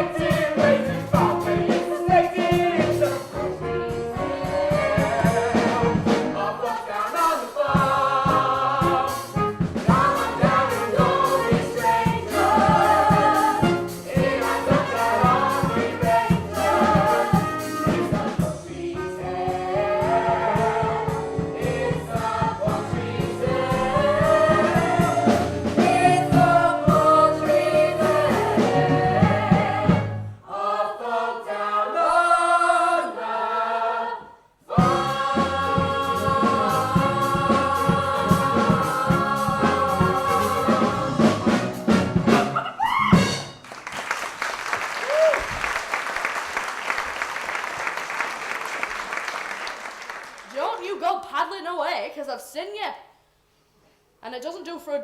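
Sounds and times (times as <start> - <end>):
band accompaniment with beat: 0.0 - 30.2, 34.7 - 43.8
ensemble singing in chorus: 0.0 - 42.2.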